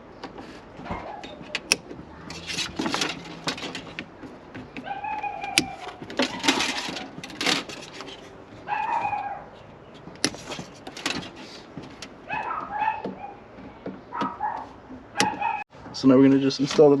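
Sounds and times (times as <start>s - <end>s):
sharp clicks and knocks: 0.0s - 15.7s
dog whining: 0.8s - 1.5s, 4.8s - 7.2s, 8.6s - 9.7s, 12.3s - 15.7s.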